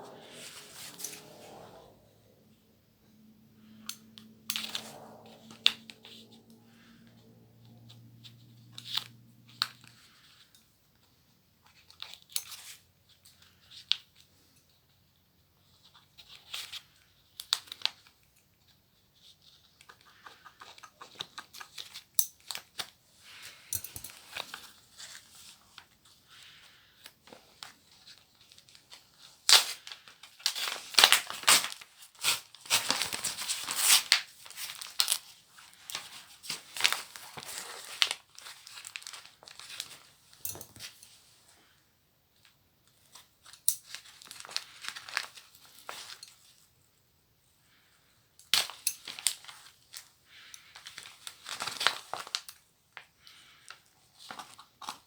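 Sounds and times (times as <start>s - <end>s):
wrapping paper tearing and crumpling: 29.5s - 35.2s, 36.5s - 39.9s.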